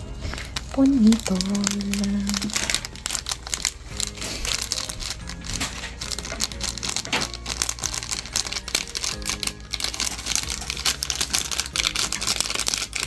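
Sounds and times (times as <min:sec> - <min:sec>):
plastic packaging crinkling: 0:00.0 - 0:13.0.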